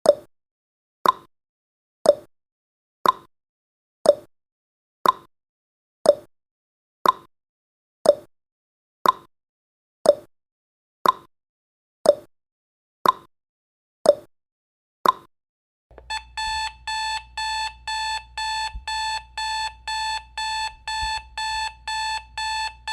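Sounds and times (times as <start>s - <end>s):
rapid alarm clock beeping: 15.9s - 22.9s
timer ticking: 15.9s - 22.9s.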